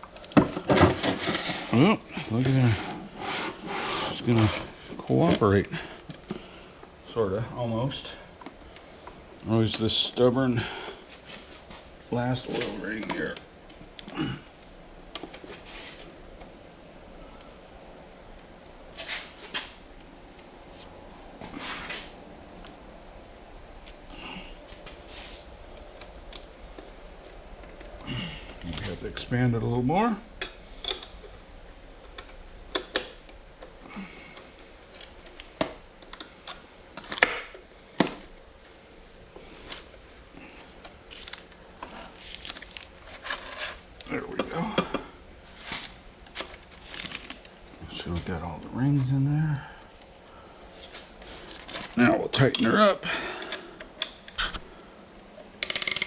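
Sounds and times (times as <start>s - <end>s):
faint clicks and handling noise: 0.0s - 1.5s, 4.2s - 6.9s, 8.3s - 16.6s, 23.8s - 29.3s, 30.4s - 31.4s, 32.0s - 38.4s, 39.3s - 49.2s, 50.8s - 52.7s
steady high-pitched whine: 0.0s - 56.0s.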